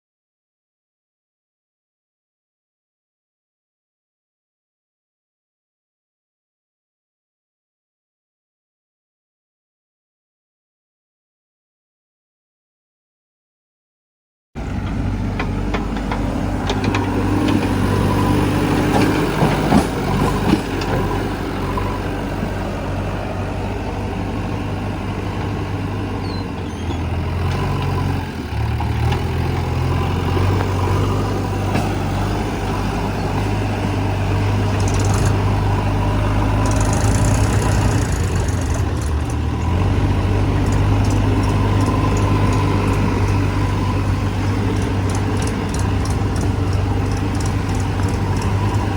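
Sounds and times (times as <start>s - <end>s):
heavy diesel engine running: 14.6s - 48.9s.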